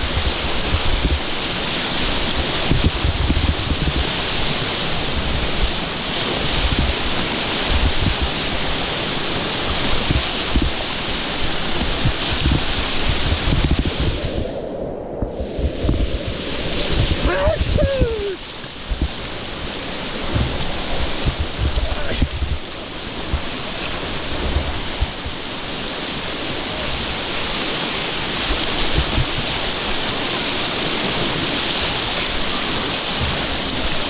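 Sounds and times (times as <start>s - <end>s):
stream water rushing: 0.0s - 34.0s
low rumbles: 11.4s - 25.6s.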